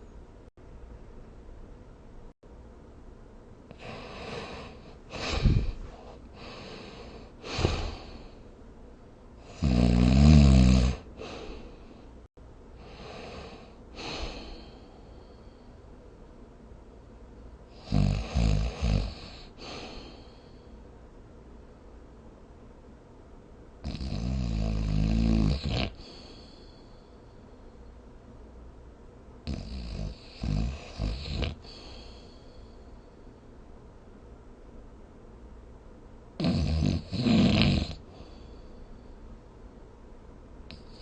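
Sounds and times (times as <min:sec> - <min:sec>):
person snoring: 0:03.7 - 0:08.4, 0:09.4 - 0:11.9, 0:12.8 - 0:15.0, 0:17.7 - 0:20.4, 0:23.8 - 0:26.7, 0:29.4 - 0:32.6, 0:36.4 - 0:38.7
snorts: 0:03.8 - 0:08.3, 0:09.4 - 0:11.7, 0:17.8 - 0:20.4, 0:23.8 - 0:26.6, 0:29.4 - 0:32.4, 0:36.4 - 0:38.5.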